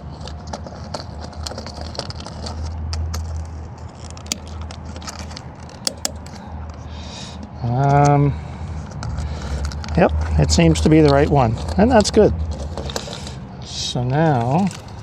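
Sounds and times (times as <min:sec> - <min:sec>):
fuel cap clicks and scrapes: 0:04.3 - 0:04.6, 0:05.8 - 0:06.2.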